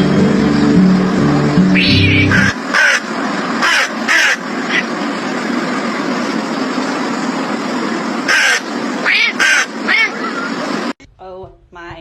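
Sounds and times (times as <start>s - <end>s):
music: 0.0s - 2.6s
harsh caw-like animal calls: 1.8s - 5.0s, 8.2s - 10.5s.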